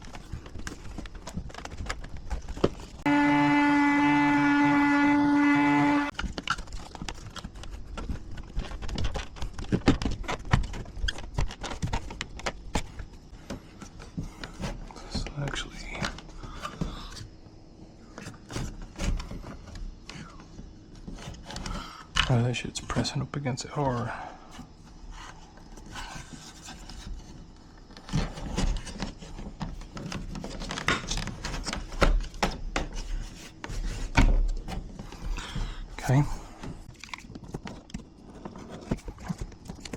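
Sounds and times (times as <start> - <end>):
hard objects clicking and knocking: 0.0 - 3.0, 6.1 - 17.3
hardware rubbing and scraping: 0.0 - 7.0.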